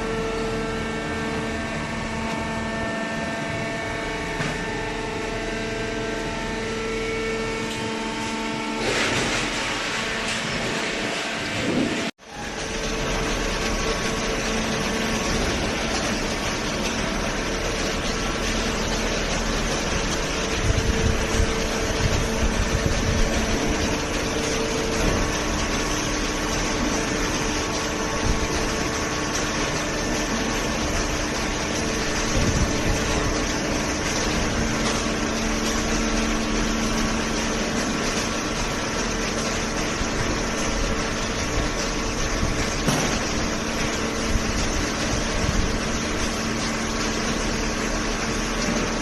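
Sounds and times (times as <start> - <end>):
hydraulic pump and motor hum: 0.0 - 49.0.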